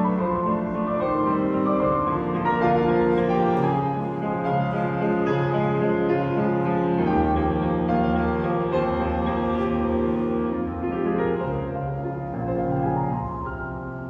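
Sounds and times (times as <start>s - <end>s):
piano: 0.0s - 14.0s.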